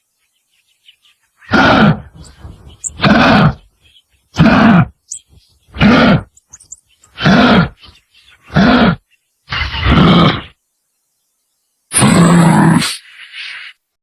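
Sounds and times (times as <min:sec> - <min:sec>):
kangaroo moaning calls: 0:01.4 - 0:03.7, 0:04.4 - 0:05.0, 0:05.7 - 0:06.4, 0:07.2 - 0:07.8.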